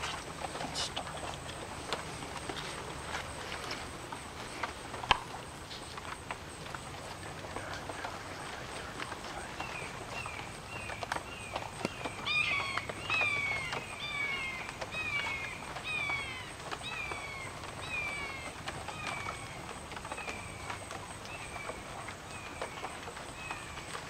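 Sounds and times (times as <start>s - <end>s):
animal calling: 0.0s - 2.8s, 7.1s - 19.6s.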